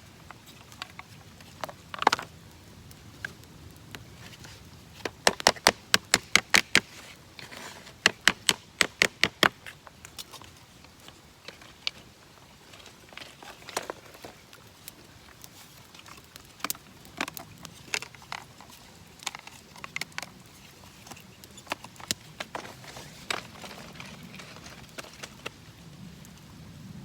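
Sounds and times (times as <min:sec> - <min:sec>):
tent peg being hammered: 0:05.2 - 0:06.9, 0:08.1 - 0:09.6.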